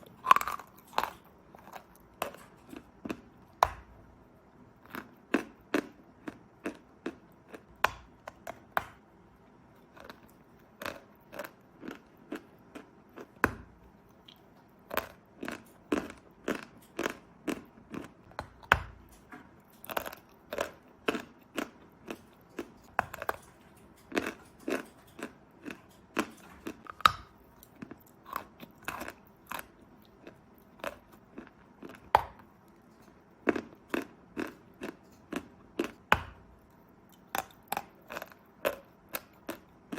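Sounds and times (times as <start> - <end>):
chalk being chewed crunching: 9.8 - 13.4, 19.8 - 36.1, 37.1 - 39.9.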